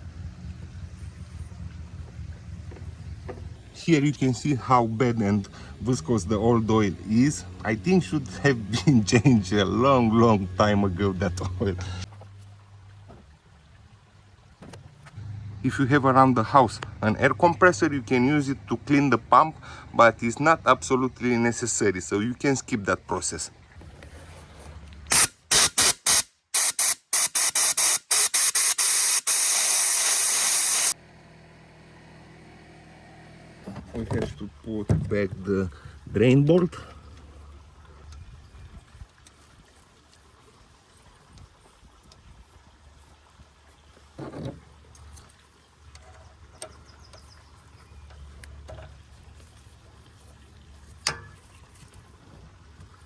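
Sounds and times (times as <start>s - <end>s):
compressed air blasts: 25.1s - 31.0s
tools clicking and tapping: 51.0s - 51.4s.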